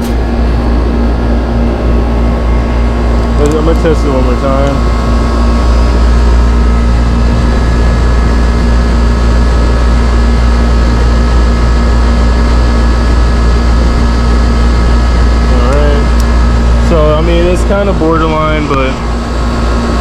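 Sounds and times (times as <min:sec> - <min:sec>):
air conditioner humming: 0:00.0 - 0:20.0.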